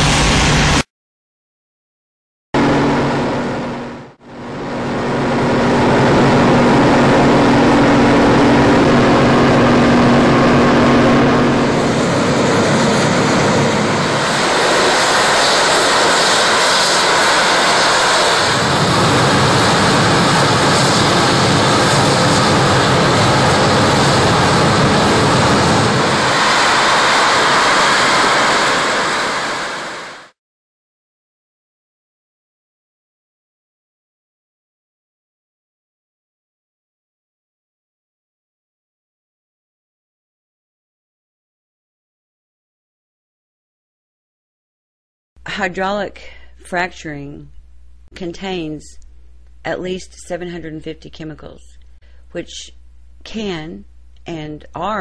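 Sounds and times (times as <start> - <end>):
loud rumbling drone: 0.0 - 0.9, 2.6 - 30.4.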